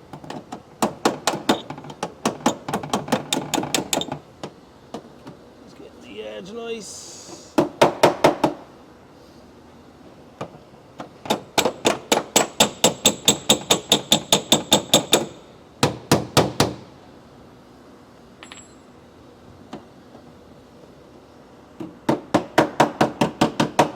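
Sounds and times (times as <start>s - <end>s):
hammer tapping on sheet metal: 21.8s - 23.9s.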